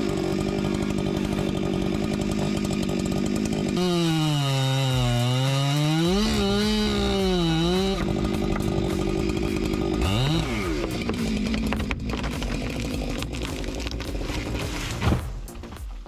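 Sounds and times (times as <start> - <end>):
chainsaw cutting wood: 0.0 - 16.0.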